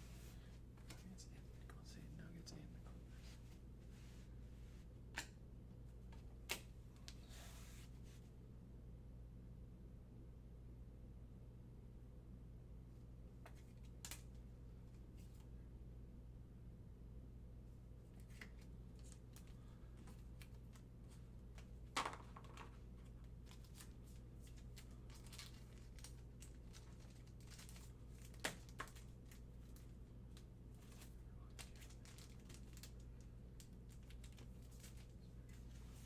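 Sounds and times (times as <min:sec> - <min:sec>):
steady low hum: 0:00.0 - 0:36.0
cards clicking and rustling: 0:18.1 - 0:20.8, 0:21.5 - 0:29.9, 0:30.8 - 0:35.8.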